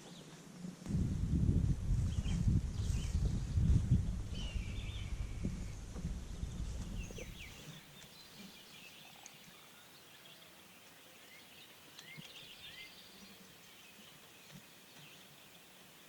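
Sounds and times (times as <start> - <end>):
low rumble: 0.9 - 7.6
birds chirping and trilling: 2.1 - 16.0.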